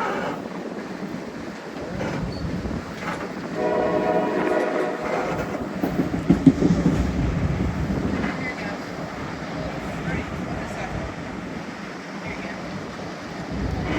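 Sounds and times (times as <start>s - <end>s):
train wheels clattering on tracks: 0.0s - 13.9s
locomotive horn: 3.5s - 5.8s.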